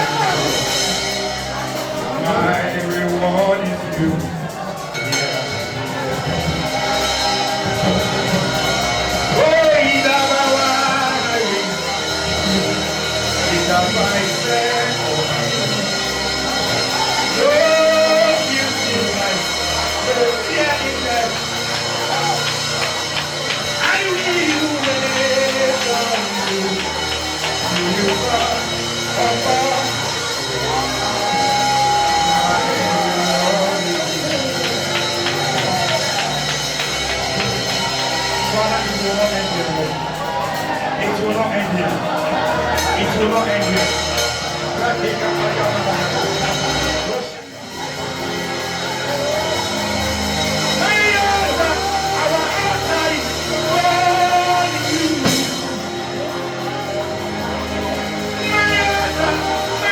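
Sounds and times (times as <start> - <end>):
live band sustained chords: 0.0 - 59.9.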